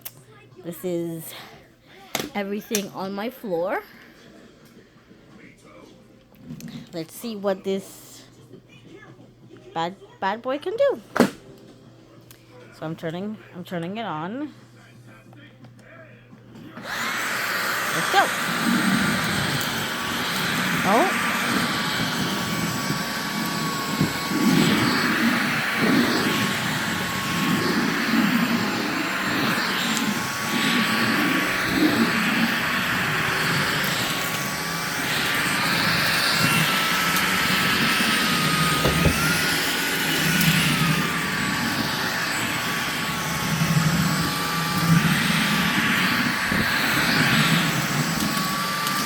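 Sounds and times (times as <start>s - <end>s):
vacuum cleaner motor whine: 16.6s - 49.0s.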